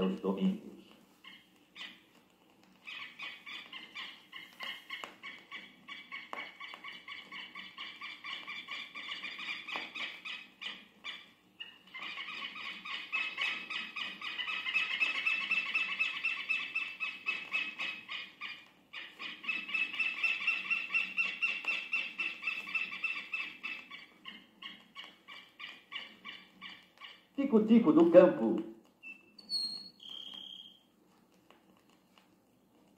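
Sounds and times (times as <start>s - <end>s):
lapwing calling harsh notes: 2.8s - 27.9s, 29.0s - 30.8s.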